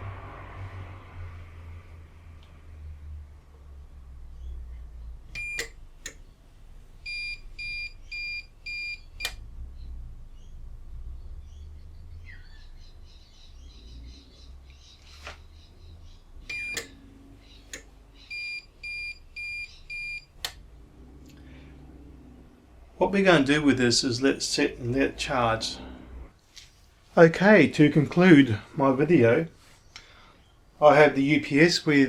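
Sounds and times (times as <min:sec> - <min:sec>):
alarm buzzer beeping: 0:07.1 - 0:09.4, 0:16.5 - 0:16.9, 0:18.3 - 0:20.3.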